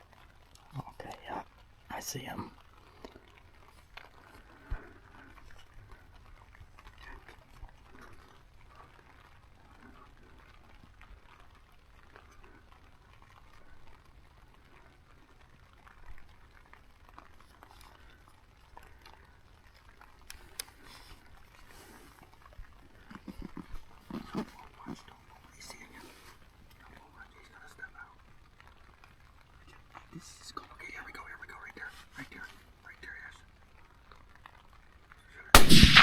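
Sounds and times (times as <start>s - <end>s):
rain patter: 0.0s - 35.7s
sharp click: 35.6s - 36.0s.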